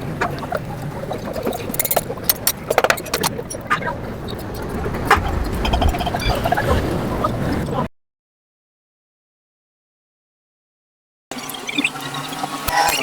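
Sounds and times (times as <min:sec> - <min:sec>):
metallic clicks of tools: 0:01.5 - 0:03.7.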